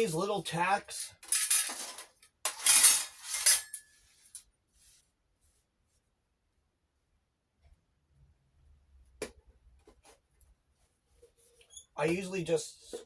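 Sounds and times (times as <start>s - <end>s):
metal tacks clinking together: 1.0s - 3.8s.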